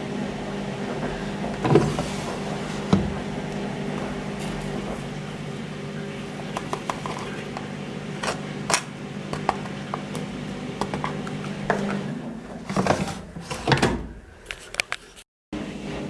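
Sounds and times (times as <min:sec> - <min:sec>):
steady low hum: 0:00.0 - 0:13.6
washing machine clicks and knocks: 0:06.5 - 0:12.1.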